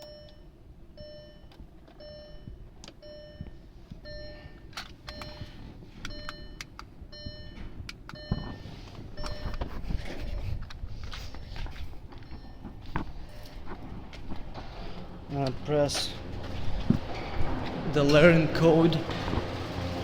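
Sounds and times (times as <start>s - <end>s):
short electronic beep: 9.2s - 9.6s.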